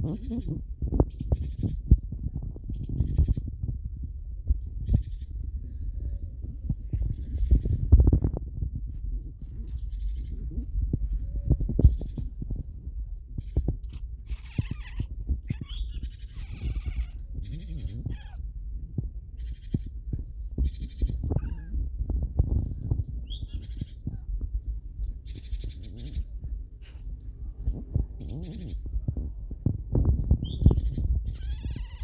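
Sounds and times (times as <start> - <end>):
low rumble: 0.0 - 32.0
cat meowing and chirping: 13.2 - 18.4, 20.4 - 21.8, 28.2 - 28.9, 30.3 - 32.0
bird chirps: 14.3 - 18.4.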